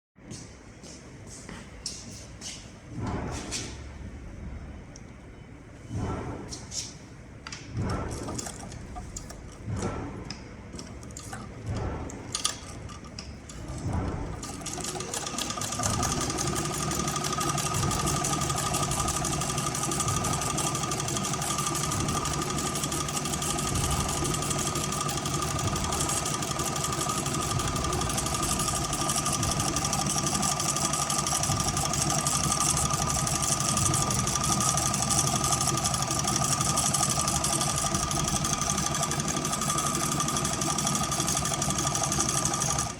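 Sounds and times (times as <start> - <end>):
sewing machine whining: 8.1 - 9.6, 10.7 - 42.9.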